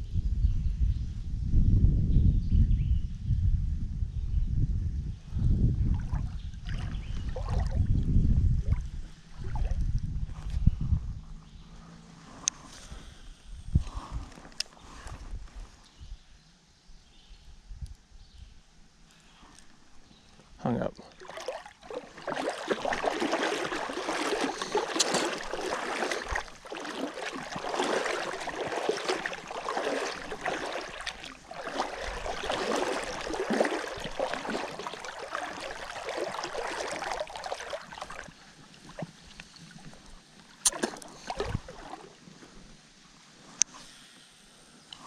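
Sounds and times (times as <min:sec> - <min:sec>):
creek water splashing: 0:05.9 - 0:09.9, 0:21.1 - 0:43.1.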